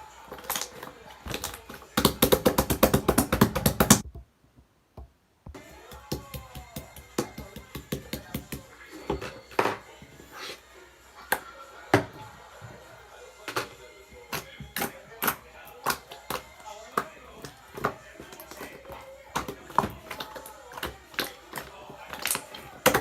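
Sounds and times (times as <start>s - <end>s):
slime squelching: 0.0s - 4.1s, 13.4s - 23.0s.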